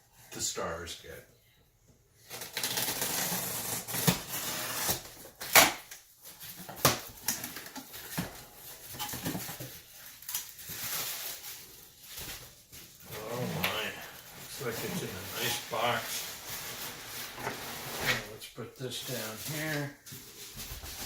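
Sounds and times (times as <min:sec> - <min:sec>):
cardboard rustling and scraping: 0:10.7 - 0:18.4, 0:19.1 - 0:21.0.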